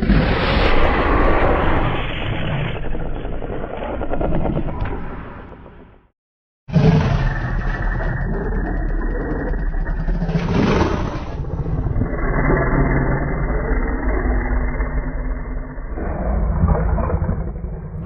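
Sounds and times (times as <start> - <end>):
rumbling monster growl: 6.7 - 18.0.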